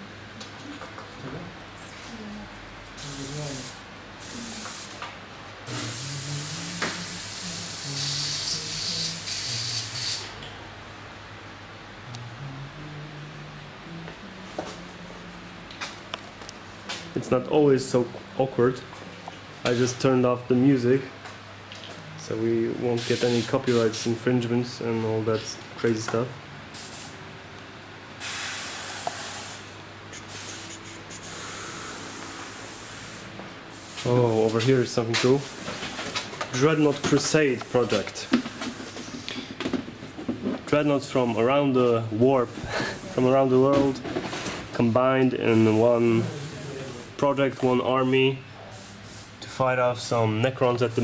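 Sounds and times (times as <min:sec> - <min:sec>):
paint spray hissing: 0:03.0 - 0:05.0, 0:05.7 - 0:10.4, 0:23.0 - 0:24.2, 0:26.8 - 0:27.2, 0:28.2 - 0:34.4, 0:48.7 - 0:49.3.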